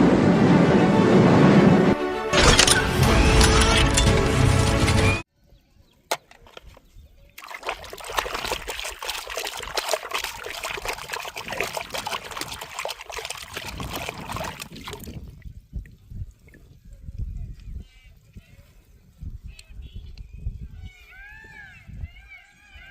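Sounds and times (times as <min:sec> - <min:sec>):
water trickling and splashing: 0:06.5 - 0:17.1.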